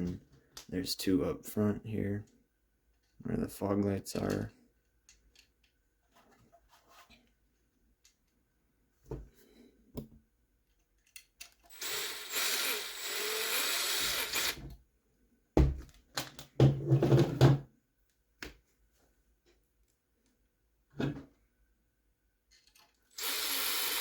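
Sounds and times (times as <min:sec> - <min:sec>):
small electric screwdriver running: 0:11.7 - 0:14.6, 0:23.1 - 0:24.0.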